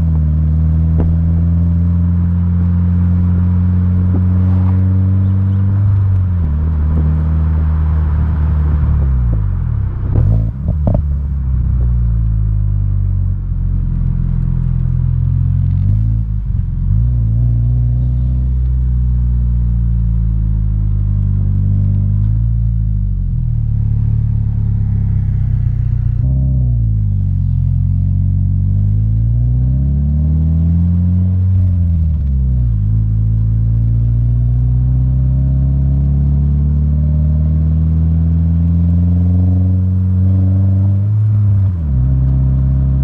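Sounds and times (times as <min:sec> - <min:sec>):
exhaust pops: 0:00.0 - 0:01.5, 0:08.7 - 0:12.6
car engine and exhaust: 0:00.0 - 0:43.0.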